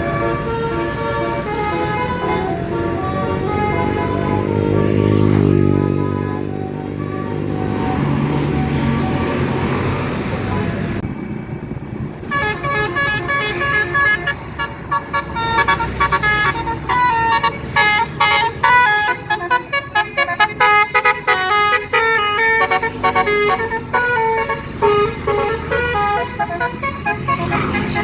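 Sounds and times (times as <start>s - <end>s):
bus horn tooting melody: 0.0s - 11.0s, 12.2s - 28.0s.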